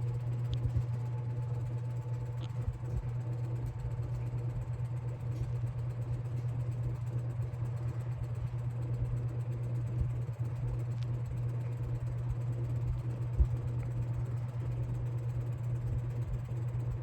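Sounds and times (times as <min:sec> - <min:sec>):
box fan motor humming: 0:00.0 - 0:17.0.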